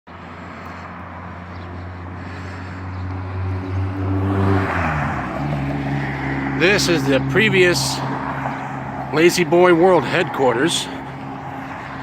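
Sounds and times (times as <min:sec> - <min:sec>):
vehicle engine humming: 0:00.1 - 0:12.0.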